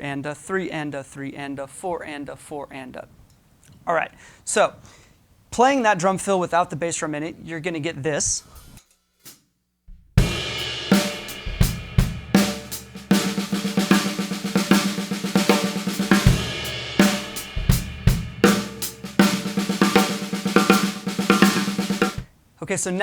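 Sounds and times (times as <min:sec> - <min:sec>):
snare drum roll fill: 0:10.2 - 0:22.3.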